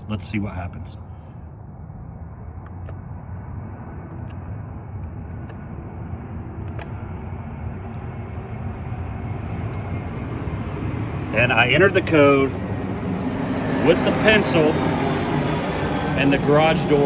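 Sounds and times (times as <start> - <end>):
low outdoor rumble: 0.0 - 17.0.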